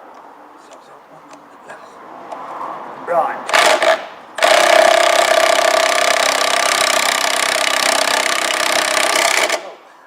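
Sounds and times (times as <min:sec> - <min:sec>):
power tool running: 0:03.5 - 0:09.8.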